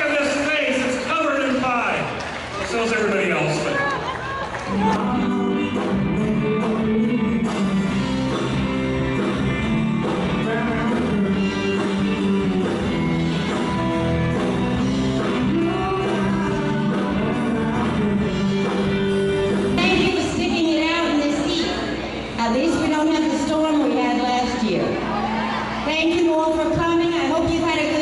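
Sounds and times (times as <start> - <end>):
rock music with guitar and singing: 4.6 - 22.4.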